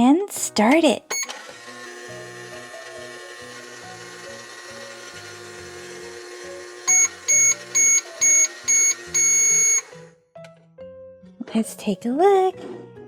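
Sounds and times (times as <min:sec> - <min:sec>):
toy microwave humming: 0:01.1 - 0:10.2
short beeps: 0:06.9 - 0:09.8.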